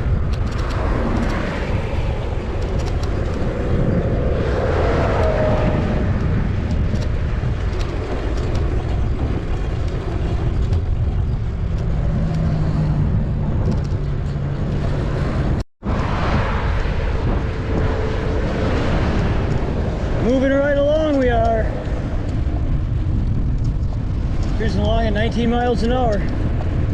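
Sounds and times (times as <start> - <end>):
steady vehicle hum: 0.0 - 26.9
traffic passing: 0.0 - 26.9
wind over microphone: 0.0 - 26.9.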